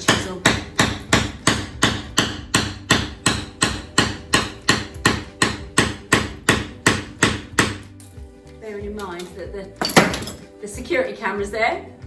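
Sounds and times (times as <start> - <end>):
hammer striking chisel: 0.0 - 8.0.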